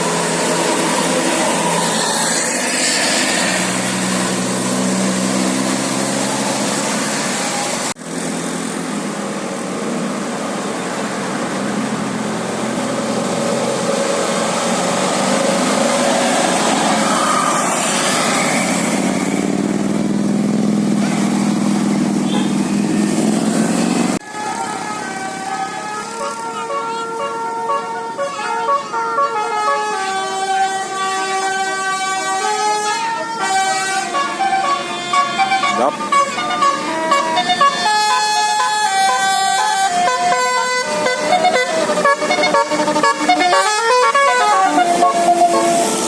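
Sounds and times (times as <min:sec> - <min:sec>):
engine hum: 0:00.0 - 0:28.2
road traffic: 0:00.0 - 0:46.0.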